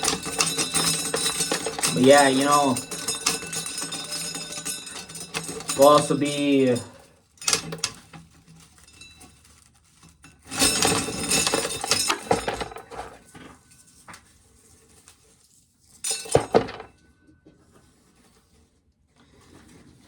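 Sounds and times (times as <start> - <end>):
corn kernels rattling into container: 0.0 - 7.0.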